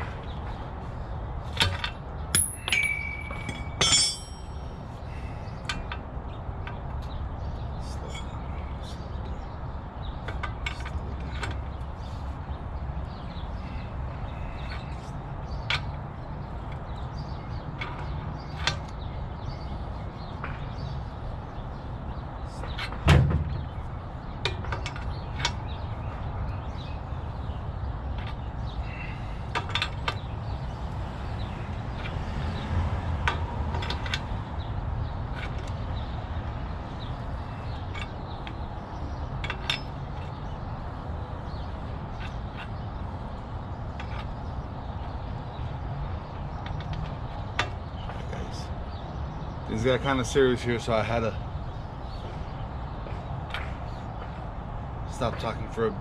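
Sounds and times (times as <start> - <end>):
metal tools clinking: 2.3 - 4.8
sharp ringing metal knocks: 2.3 - 4.8.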